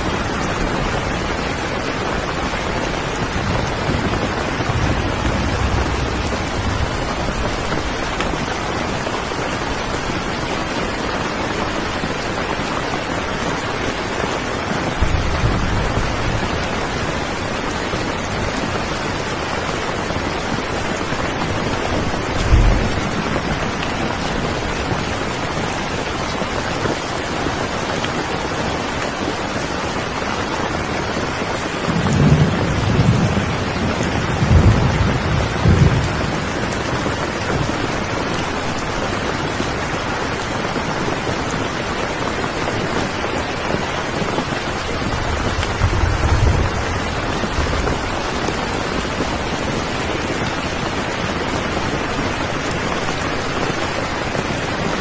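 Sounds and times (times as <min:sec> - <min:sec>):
low thunder rumbling: 0:00.0 - 0:10.6, 0:14.4 - 0:26.5, 0:31.8 - 0:40.9, 0:43.4 - 0:50.9
heavy rainfall: 0:00.0 - 0:55.0.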